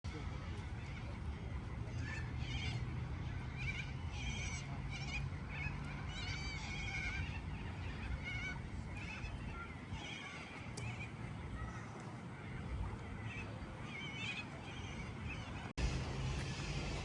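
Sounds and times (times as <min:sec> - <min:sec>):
low rumble: 0:15.8 - 0:17.0.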